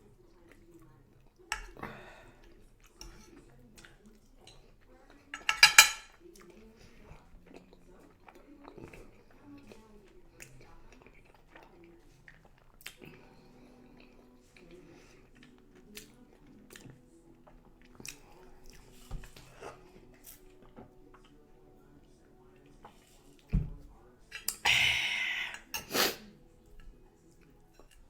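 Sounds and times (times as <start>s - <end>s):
quiet chewing: 0.0s - 28.0s
tableware clinking: 5.3s - 6.2s.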